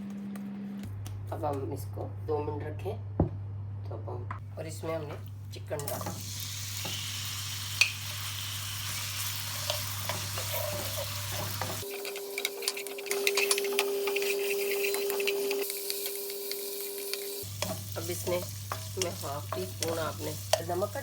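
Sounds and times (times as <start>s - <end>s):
chicken sizzling in oil: 5.9s - 21.0s.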